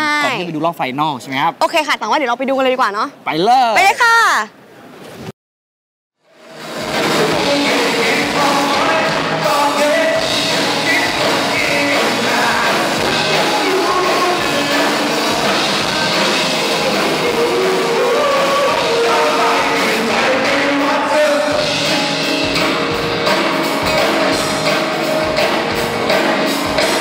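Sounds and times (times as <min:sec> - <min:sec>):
rock music with singing: 0:06.5 - 0:27.0.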